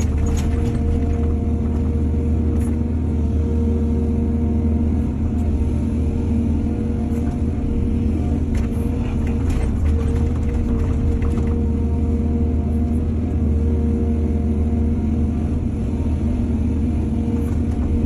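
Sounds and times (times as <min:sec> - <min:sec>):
faint clatter: 0:00.0 - 0:02.8, 0:08.5 - 0:11.7
diesel engine rumbling: 0:00.0 - 0:18.0.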